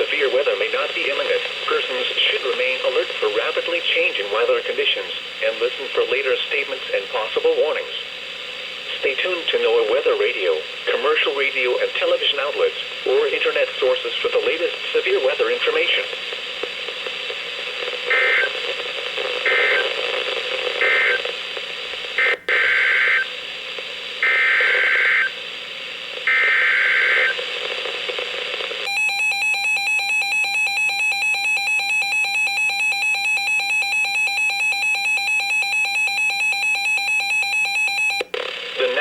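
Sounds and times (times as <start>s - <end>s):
radio broadcast hiss: 0.0s - 28.9s, 38.4s - 39.0s.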